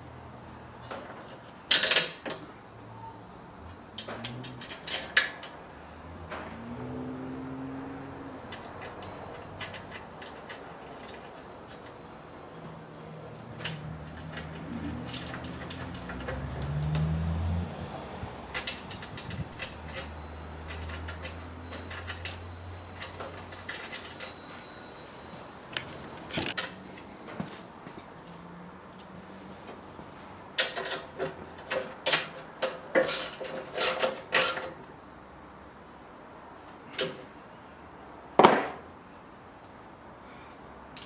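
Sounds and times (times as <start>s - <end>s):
metal nuts and bolts clinking: 3.7s - 5.6s, 8.5s - 12.0s, 13.4s - 17.0s, 18.5s - 24.7s.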